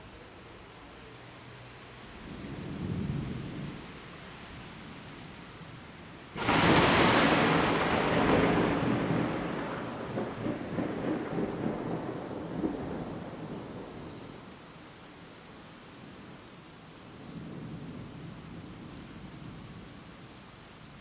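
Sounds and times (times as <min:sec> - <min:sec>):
faint steady hiss: 0:00.0 - 0:21.0
lightning strike crack: 0:06.4 - 0:14.0
thunder rumbling: 0:06.4 - 0:14.5.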